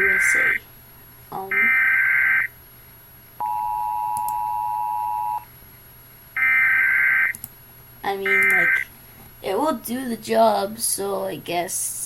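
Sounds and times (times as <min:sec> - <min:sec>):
digital data tones: 0:00.0 - 0:00.6.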